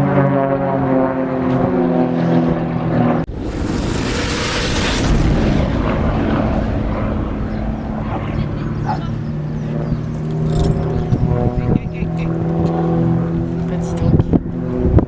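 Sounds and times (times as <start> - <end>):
aircraft roaring past: 0.0 - 15.0
high whine falling in pitch: 3.3 - 9.7.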